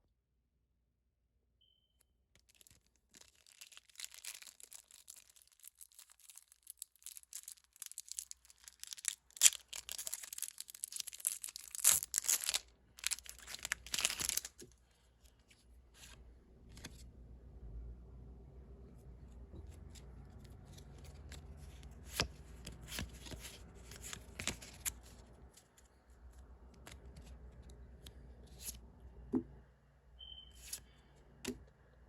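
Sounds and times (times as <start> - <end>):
foil wrapper crinkling: 2.4 - 14.6
foil wrapper ripping: 2.4 - 14.6.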